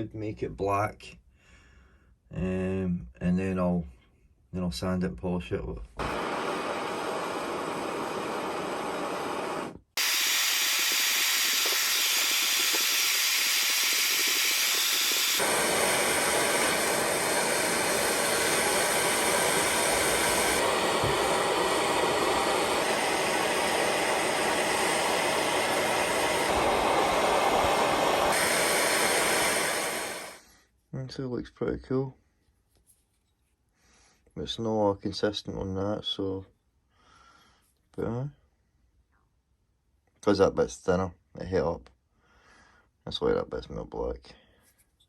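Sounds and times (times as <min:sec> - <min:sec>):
gas blowtorch hissing: 0:06.0 - 0:30.4.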